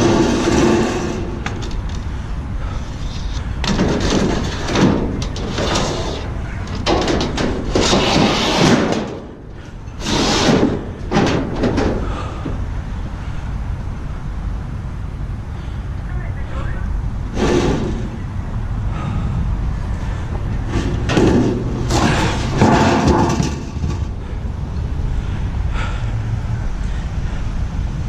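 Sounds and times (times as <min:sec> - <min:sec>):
scrap metal banging and scraping: 0:00.0 - 0:01.9, 0:02.7 - 0:12.6, 0:17.3 - 0:18.3, 0:20.5 - 0:24.4
low rumble: 0:10.6 - 0:28.0.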